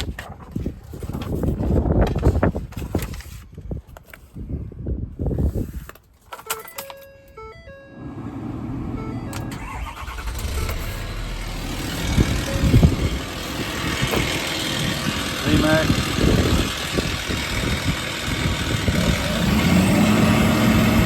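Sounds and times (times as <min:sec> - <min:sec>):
diesel engine cranking and idling: 0:06.8 - 0:21.0.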